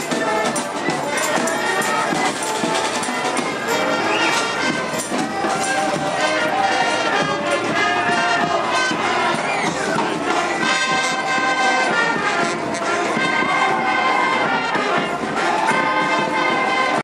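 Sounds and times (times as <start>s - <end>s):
brass band playing: 0.0s - 17.0s.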